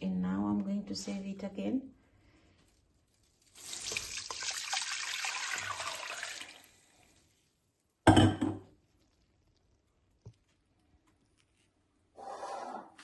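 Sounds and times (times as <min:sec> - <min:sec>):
juice being poured into a container: 0:02.6 - 0:07.7.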